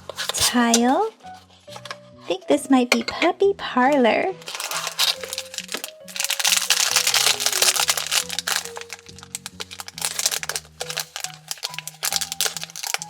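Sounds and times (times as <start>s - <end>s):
plastic packaging crinkling: 4.4s - 13.0s.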